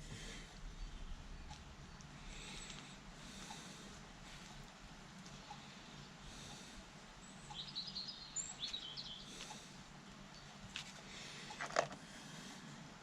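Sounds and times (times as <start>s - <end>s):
small bird chirping: 7.2s - 9.7s.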